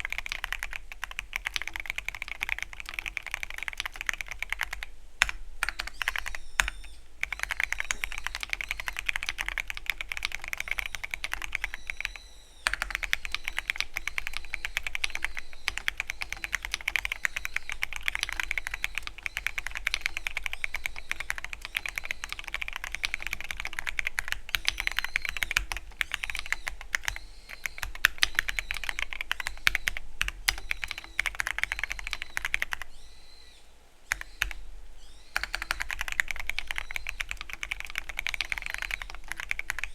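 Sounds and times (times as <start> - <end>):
mechanical keyboard typing: 0.0 - 32.9, 34.1 - 34.6, 35.4 - 39.9.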